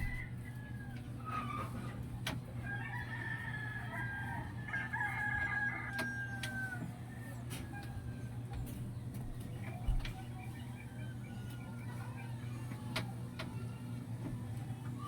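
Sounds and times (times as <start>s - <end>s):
rooster crowing: 0.0s - 1.6s, 2.6s - 8.3s.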